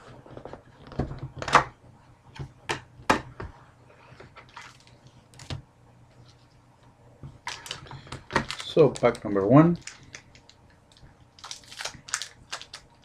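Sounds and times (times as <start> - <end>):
wrapper crinkling: 7.4 - 13.0.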